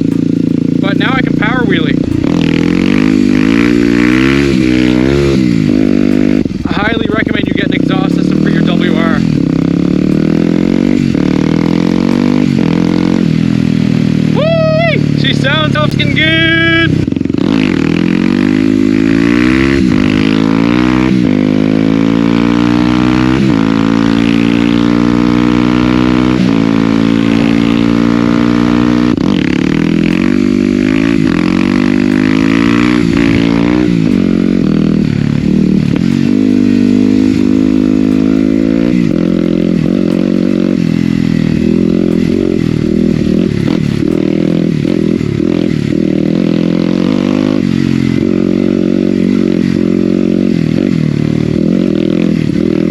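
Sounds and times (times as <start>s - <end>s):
motorcycle engine revving: 0.0s - 52.9s.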